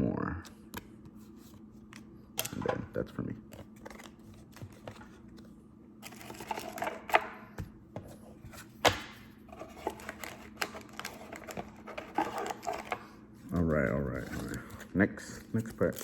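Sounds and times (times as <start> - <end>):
trading cards clicking and rustling: 3.5 - 7.3, 8.8 - 16.0.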